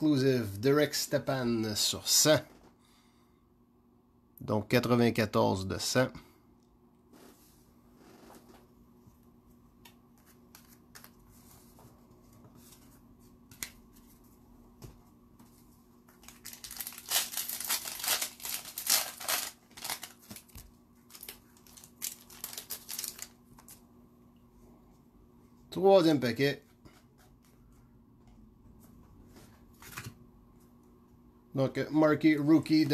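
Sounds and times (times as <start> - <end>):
foil wrapper crinkling: 16.2 - 23.8.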